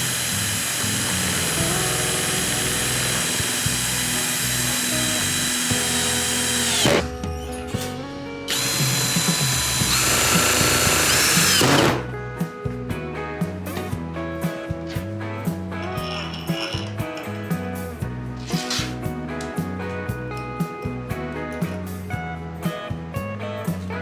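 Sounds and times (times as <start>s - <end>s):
power tool running: 0.0s - 12.1s
background music: 0.0s - 24.0s.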